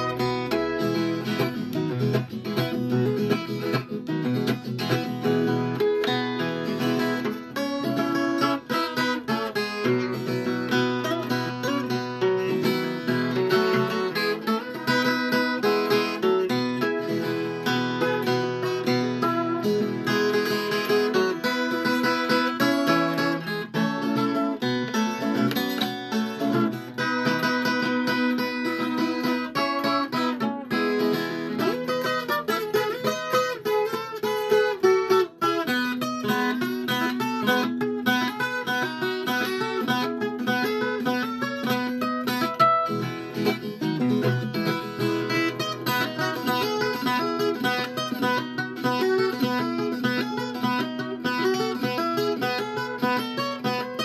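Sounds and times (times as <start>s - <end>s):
plucked folk guitar melody: 0.0s - 54.0s.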